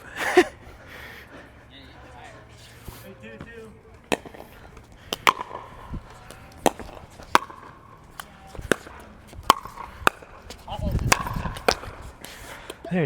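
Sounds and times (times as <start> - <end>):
paddles popping ball: 4.0 - 12.9.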